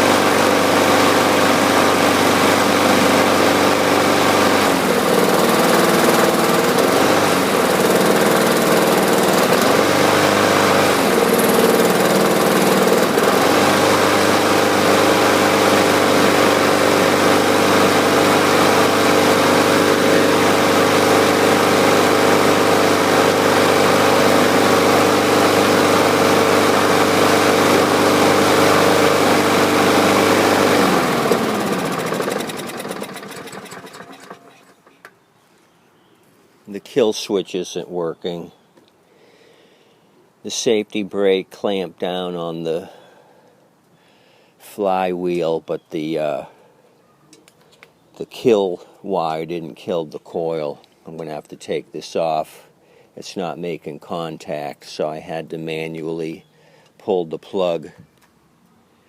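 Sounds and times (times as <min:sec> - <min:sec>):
lawn mower engine running: 0:00.0 - 0:35.2.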